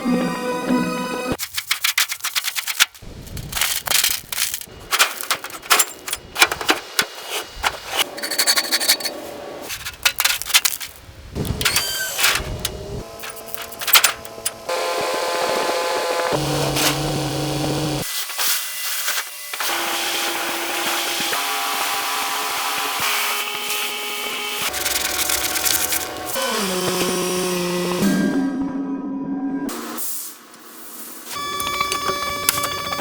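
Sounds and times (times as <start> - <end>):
metal tools clanking and rattling: 1.4 - 14.7, 31.6 - 33.0
steady machine hum: 11.0 - 18.0.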